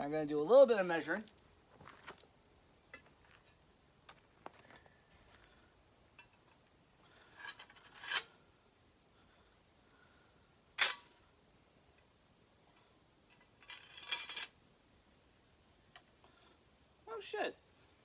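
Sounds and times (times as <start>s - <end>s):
rustling scrape: 7.2s - 8.4s, 13.6s - 14.6s
metal parts scraping: 7.3s - 8.3s, 13.4s - 14.6s.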